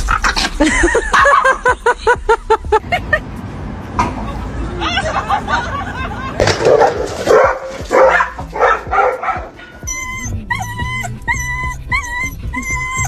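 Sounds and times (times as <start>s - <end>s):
dogs yipping and barking: 0.0s - 1.8s, 4.3s - 13.0s
rhythmic tune with bass line: 7.2s - 13.0s.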